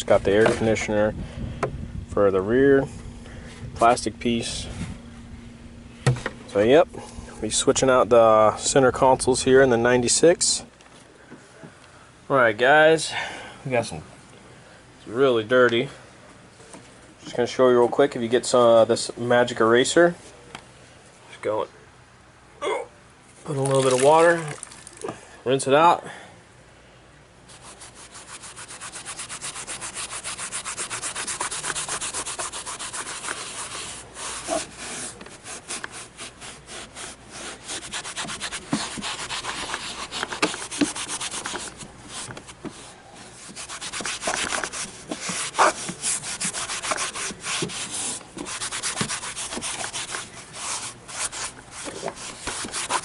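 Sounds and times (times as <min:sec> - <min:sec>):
eraser scrubbing plastic: 0:27.5 - 0:53.0.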